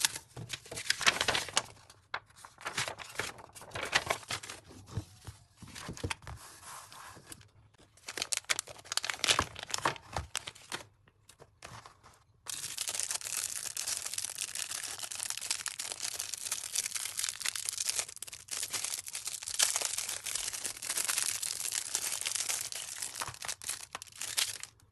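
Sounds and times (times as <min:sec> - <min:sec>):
packaging crinkling and tearing: 0:00.0 - 0:04.6, 0:08.0 - 0:10.9, 0:12.5 - 0:24.9.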